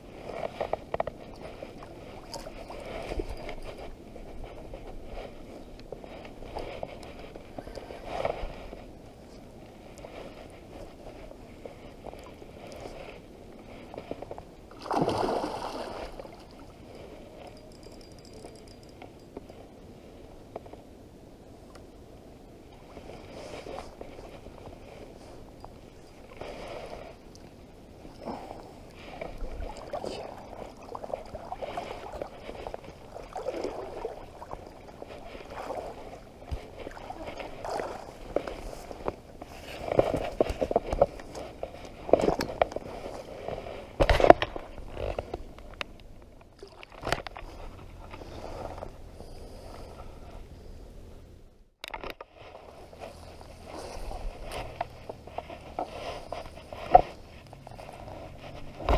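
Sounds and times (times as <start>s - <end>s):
water splashing and sloshing: 0.0s - 19.6s, 21.7s - 49.1s.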